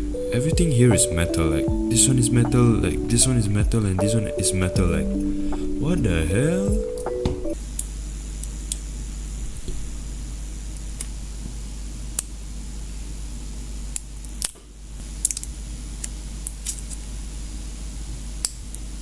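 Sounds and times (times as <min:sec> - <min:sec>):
steady low hum: 0:00.0 - 0:07.6.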